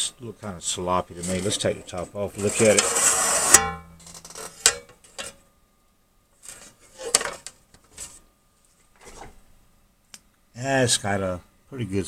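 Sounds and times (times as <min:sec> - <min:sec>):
metal cover scraping: 0:01.1 - 0:05.4, 0:06.4 - 0:08.2
ringing metal clank: 0:03.5 - 0:04.9.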